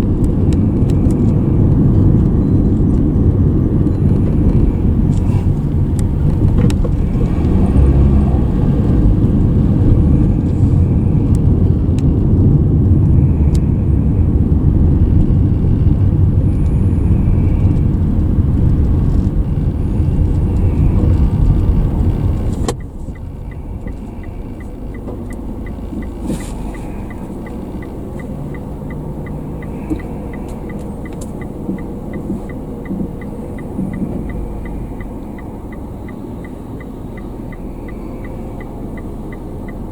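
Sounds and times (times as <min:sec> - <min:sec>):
engine idling: 0:00.0 - 0:39.9
road and engine rumble: 0:00.0 - 0:39.9
turn signal ticking: 0:00.0 - 0:39.9.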